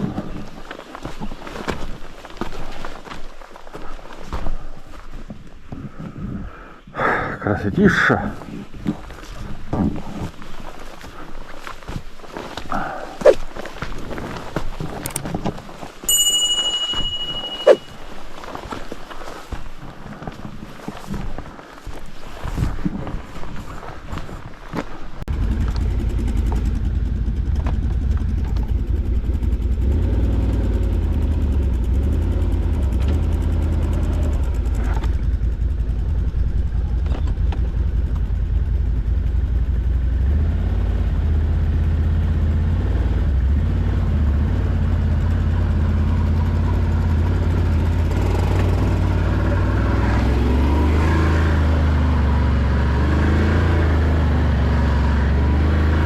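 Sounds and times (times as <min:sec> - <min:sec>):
atv engine droning: 0:25.3 - 0:56.0.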